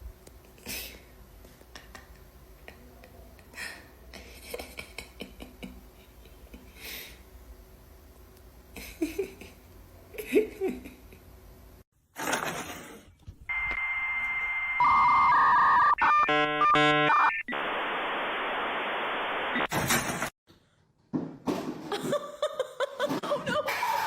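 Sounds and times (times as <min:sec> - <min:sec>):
electronic tones and beeps: 0:13.5 - 0:19.7.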